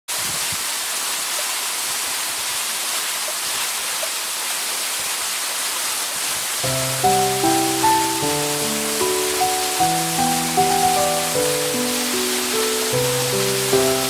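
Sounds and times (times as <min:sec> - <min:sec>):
waterfall rushing: 0:00.1 - 0:14.0
music with held notes: 0:06.6 - 0:14.0.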